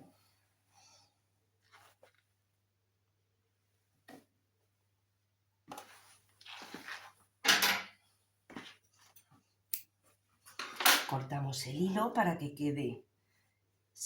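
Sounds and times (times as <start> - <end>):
sewing machine thread rustles and clicks: 1.6 - 2.4.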